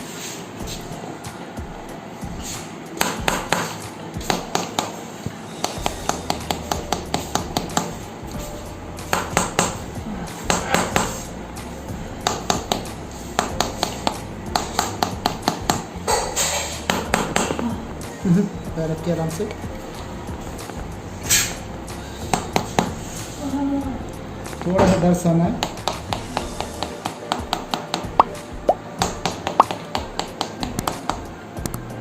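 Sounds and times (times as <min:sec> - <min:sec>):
background music: 0:00.0 - 0:32.0
rapid sharp taps: 0:05.6 - 0:08.0, 0:12.2 - 0:15.9, 0:25.6 - 0:31.8.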